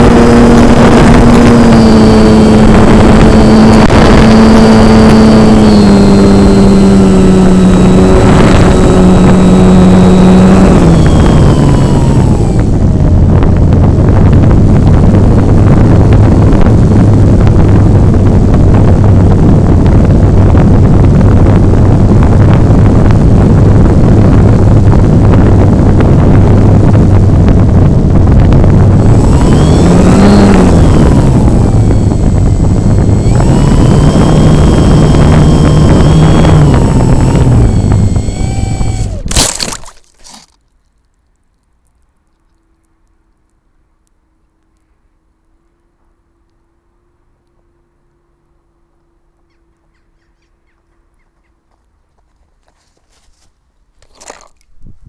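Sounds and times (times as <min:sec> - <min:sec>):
rushing air: 0:00.0 - 0:39.4
model airplane motor droning: 0:00.0 - 0:40.6.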